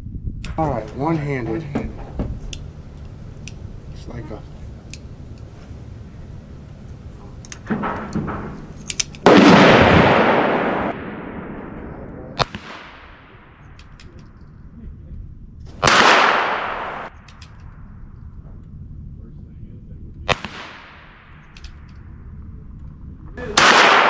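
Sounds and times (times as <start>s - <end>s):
sharp crack: 0.4s - 14.5s, 15.7s - 17.9s, 20.3s - 22.1s, 23.4s - 24.0s
revolver shots ringing: 0.6s - 13.0s
small clicks: 1.8s - 9.3s, 17.1s - 17.8s.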